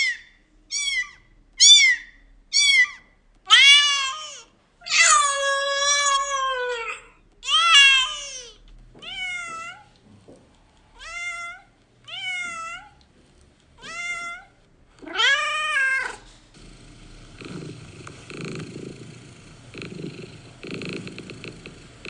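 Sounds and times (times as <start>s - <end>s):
cat meowing: 0.0s - 9.9s, 11.0s - 13.0s, 13.8s - 16.2s
cat purring: 16.0s - 22.0s.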